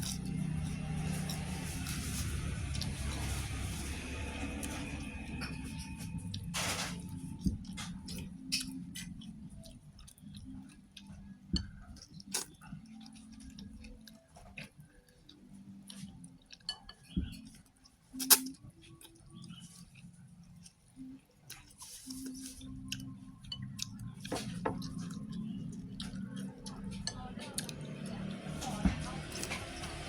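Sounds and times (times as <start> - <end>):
person chewing: 0.0 - 30.0.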